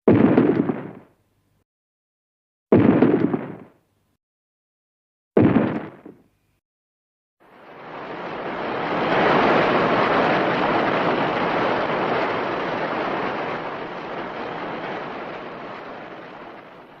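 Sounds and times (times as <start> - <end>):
long rushing noise: 7.4 - 17.0.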